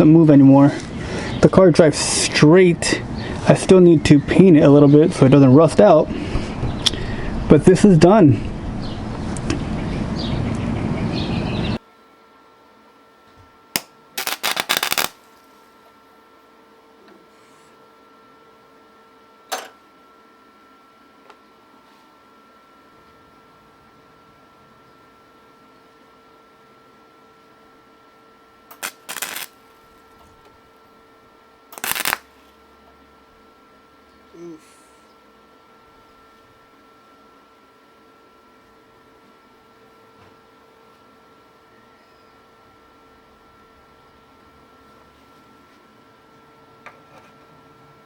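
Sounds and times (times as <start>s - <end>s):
sharp click: 13.8s - 14.3s
welder crackle: 13.8s - 15.7s, 28.7s - 30.1s, 31.7s - 32.5s.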